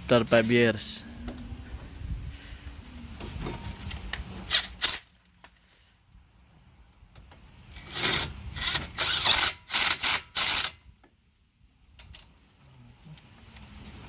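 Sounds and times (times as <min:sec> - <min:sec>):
ratchet wrench clicking: 0:09.0 - 0:10.8.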